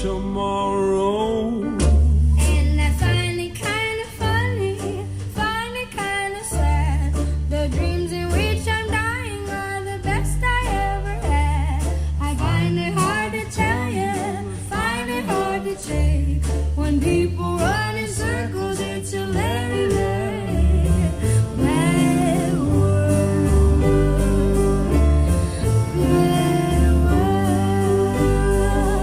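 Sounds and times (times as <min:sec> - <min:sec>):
deep sustained bass notes: 0:00.0 - 0:03.5, 0:06.6 - 0:29.0
person singing: 0:09.4 - 0:29.0
song over speakers: 0:10.4 - 0:29.0.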